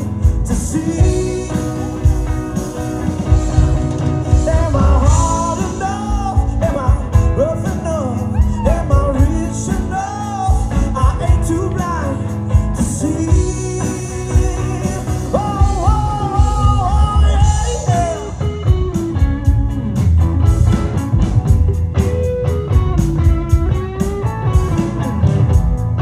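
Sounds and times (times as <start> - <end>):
bass guitar: 0.0 - 26.0
drums: 0.0 - 26.0
lead guitar line bending pitch: 12.6 - 26.0.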